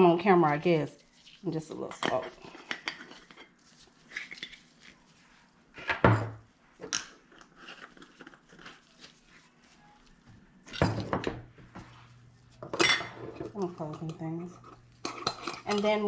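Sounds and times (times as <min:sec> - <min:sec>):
utensils clattering: 0:12.6 - 0:16.0.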